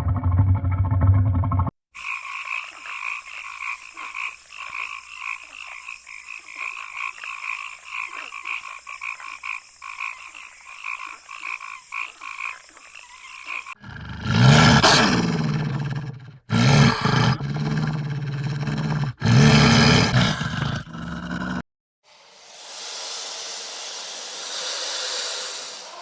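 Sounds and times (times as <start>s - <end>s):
frog-like calls: 2.0s - 13.8s.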